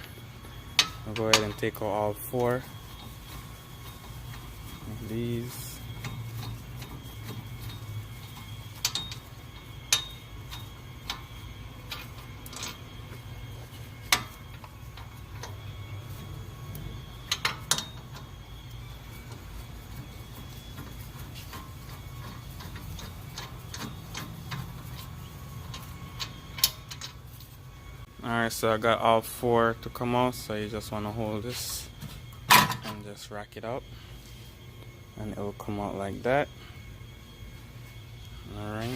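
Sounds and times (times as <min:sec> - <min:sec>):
steady low hum: 0:00.0 - 0:38.9
ratchet wrench clicking: 0:05.5 - 0:11.3.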